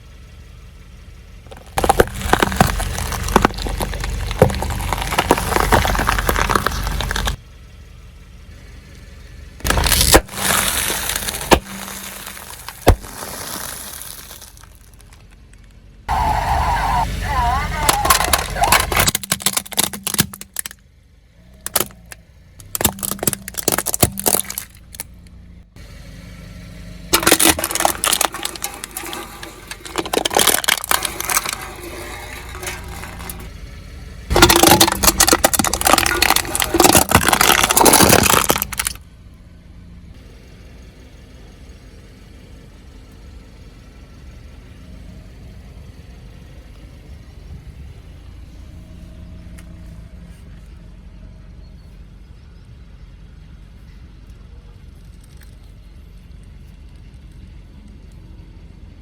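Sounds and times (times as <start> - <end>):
car running: 0.0 - 59.0
tyres crushing brittle objects: 1.5 - 7.4, 9.6 - 15.4, 17.2 - 20.8, 21.5 - 25.1, 27.1 - 33.5, 34.3 - 39.0.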